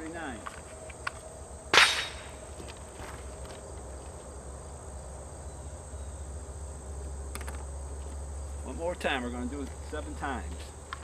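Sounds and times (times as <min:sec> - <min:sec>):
crickets chirring: 0:00.0 - 0:11.0
sharp loud crack: 0:01.8 - 0:02.4.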